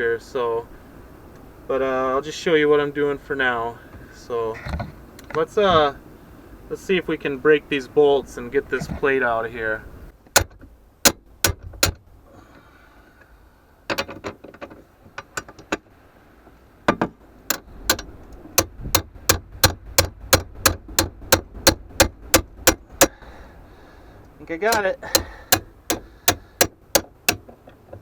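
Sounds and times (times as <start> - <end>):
ratchet wrench clicking: 17.5 - 23.2, 24.7 - 27.4.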